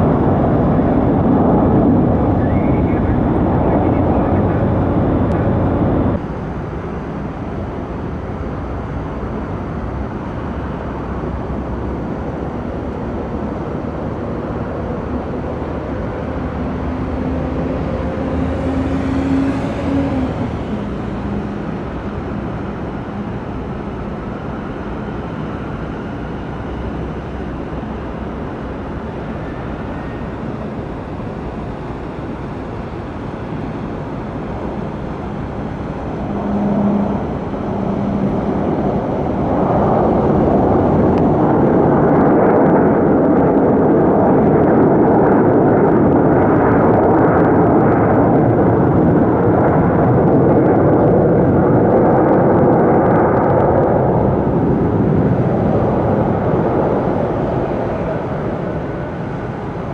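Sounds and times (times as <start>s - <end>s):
jet engine noise: 0.0s - 59.9s.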